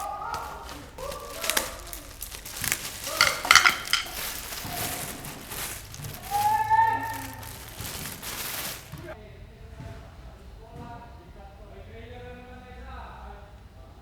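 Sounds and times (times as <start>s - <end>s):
metal tools clinking: 0.0s - 9.2s.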